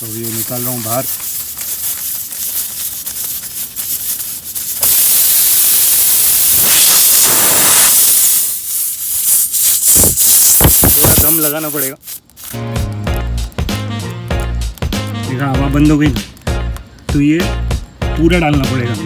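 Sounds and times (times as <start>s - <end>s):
air hissing from tire: 0.0s - 13.0s.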